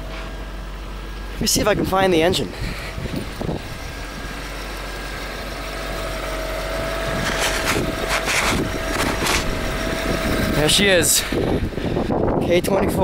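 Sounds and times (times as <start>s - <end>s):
car engine idling: 0.0s - 13.0s
scraping rustles: 7.1s - 9.6s.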